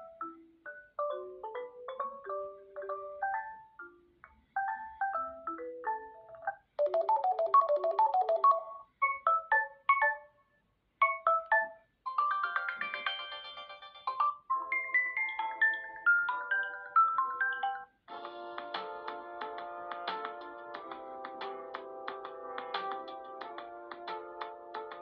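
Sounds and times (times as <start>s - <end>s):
marimba-like phone ringtones: 0.0s - 10.4s, 11.0s - 18.5s.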